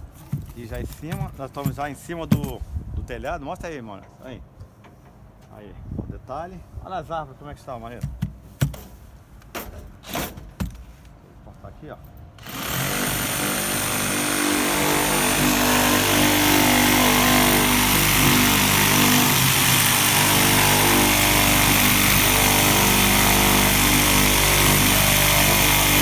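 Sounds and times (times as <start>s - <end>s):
power saw cutting wood: 12.4s - 26.0s.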